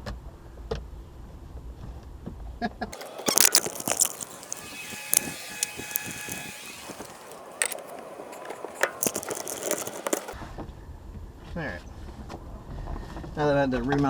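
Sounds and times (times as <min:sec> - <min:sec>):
hand tools clicking against metal: 0:03.0 - 0:10.4.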